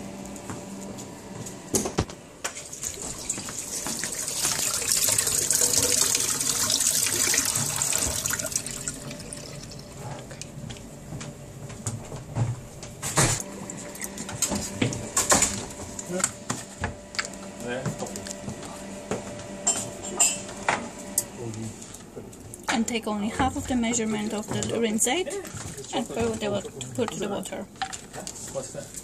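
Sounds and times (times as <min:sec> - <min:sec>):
tap water running into sink: 0:02.5 - 0:10.3.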